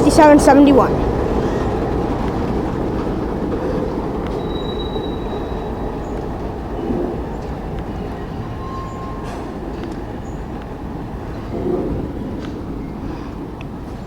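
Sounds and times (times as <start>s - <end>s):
train wheels rumbling on rail: 0.0s - 14.0s
thin wheel squeal: 4.4s - 6.0s, 8.5s - 9.5s.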